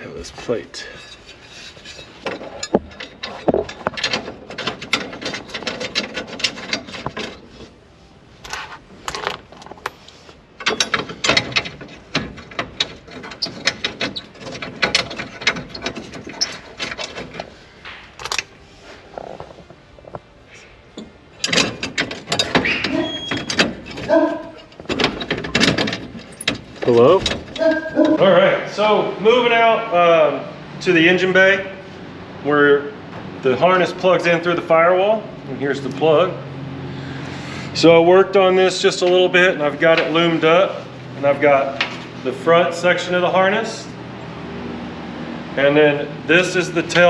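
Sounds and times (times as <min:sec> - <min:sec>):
tools and metal parts rattling: 0:00.4 - 0:07.8, 0:08.4 - 0:20.2, 0:21.0 - 0:28.2.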